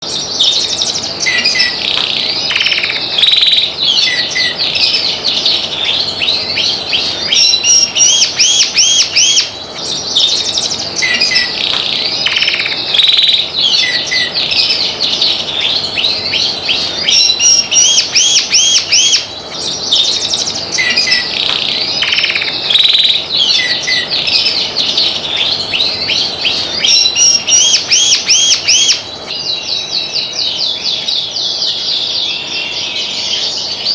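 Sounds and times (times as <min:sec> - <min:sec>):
canary singing: 0:00.0 - 0:33.9.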